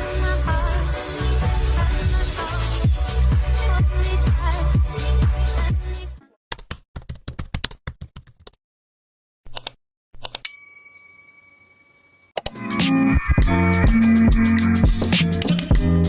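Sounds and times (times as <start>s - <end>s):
music: 0.0s - 6.2s, 12.5s - 16.0s
keyboard typing clicks: 6.5s - 8.6s, 9.5s - 10.5s
bell-like ding: 10.5s - 12.4s.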